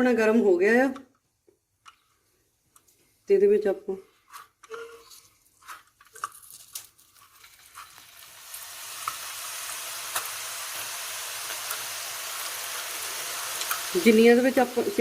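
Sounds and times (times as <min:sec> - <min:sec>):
oil sizzling: 0:05.4 - 0:15.0.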